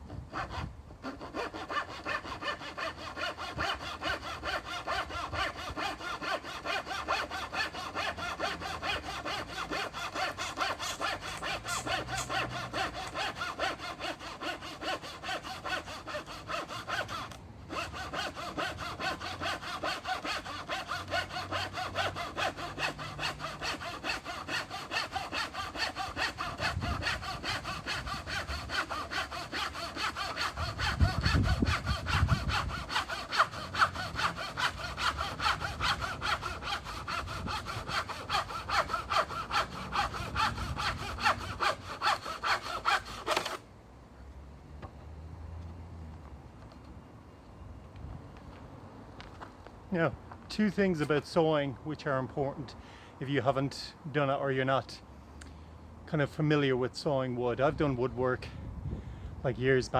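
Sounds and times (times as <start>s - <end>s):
hand saw cutting wood: 0.0s - 43.6s.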